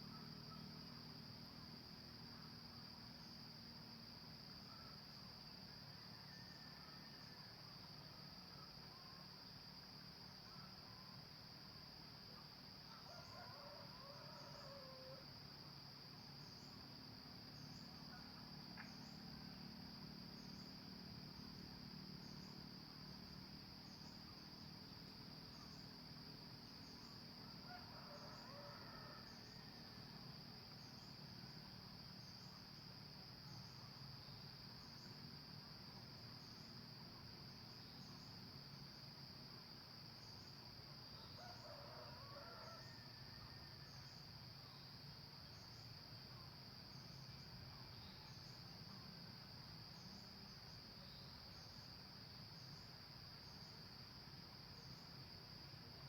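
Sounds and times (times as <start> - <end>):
crickets trilling: 0.0 - 56.0
faint junglefowl crows: 5.9 - 7.6, 12.9 - 15.5, 26.8 - 31.6, 40.9 - 44.3.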